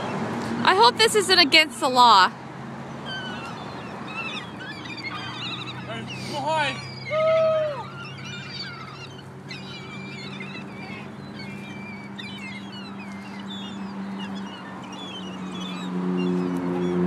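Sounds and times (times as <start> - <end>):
drawn-out gull call: 0.0 - 17.0
seagulls calling: 0.0 - 17.0.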